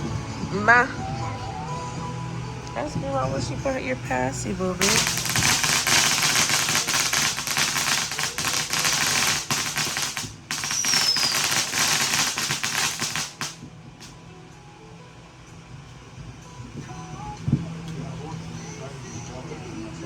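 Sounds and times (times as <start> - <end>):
fireworks crackling: 4.7 - 14.2
falling firework whistle: 4.8 - 13.6.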